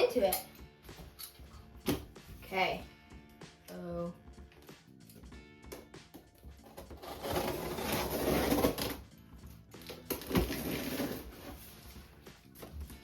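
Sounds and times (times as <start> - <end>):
background music: 0.0 - 13.0
cardboard scraping and tearing: 6.6 - 9.0, 10.1 - 11.9.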